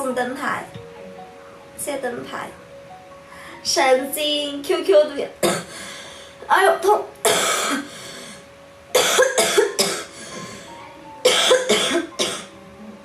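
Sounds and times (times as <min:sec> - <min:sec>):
woman coughing: 0:05.4 - 0:05.7, 0:07.3 - 0:07.9, 0:09.0 - 0:10.5, 0:11.3 - 0:12.5.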